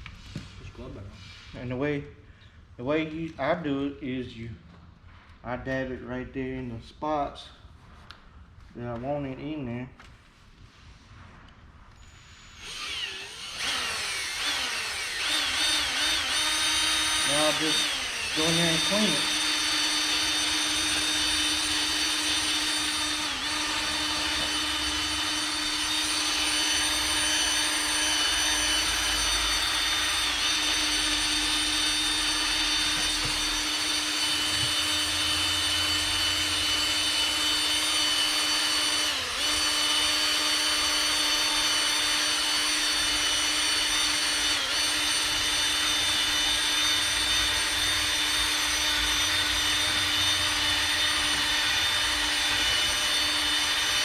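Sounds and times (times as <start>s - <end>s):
electric drill polishing: 12.1s - 54.0s.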